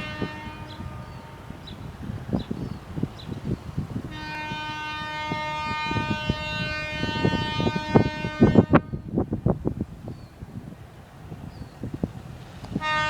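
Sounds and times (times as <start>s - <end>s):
locomotive horn chord: 0.0s - 2.8s, 3.4s - 9.2s, 12.8s - 13.0s
train rumbling on rails: 0.0s - 13.0s.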